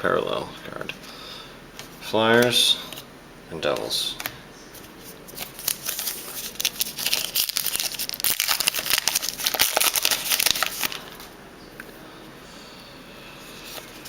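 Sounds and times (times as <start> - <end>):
card pack wrapper crinkling: 5.3 - 11.3.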